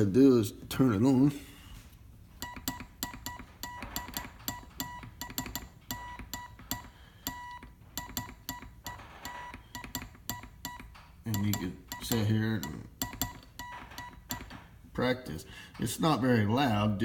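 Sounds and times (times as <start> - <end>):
morse code tone: 2.4 - 14.4.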